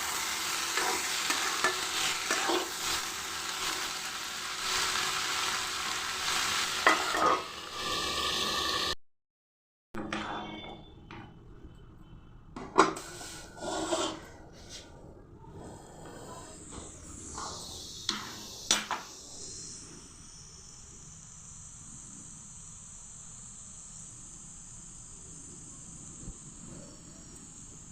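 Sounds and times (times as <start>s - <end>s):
steady high hiss: 0.0s - 7.2s.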